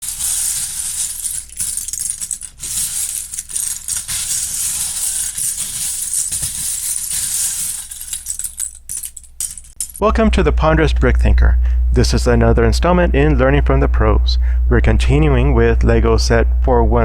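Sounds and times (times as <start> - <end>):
plastic bricks rattling: 0.0 - 10.0.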